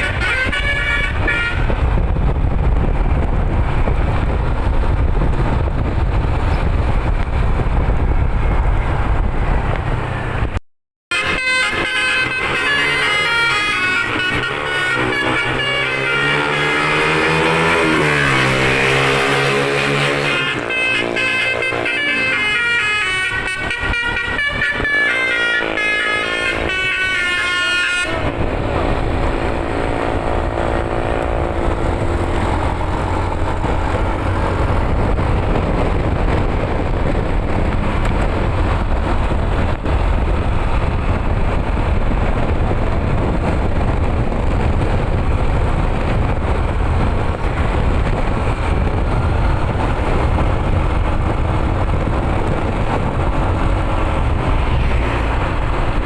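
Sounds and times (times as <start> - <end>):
bus horn melody: 0.0 - 1.9, 11.1 - 32.5
bus engine rumble: 0.0 - 56.0.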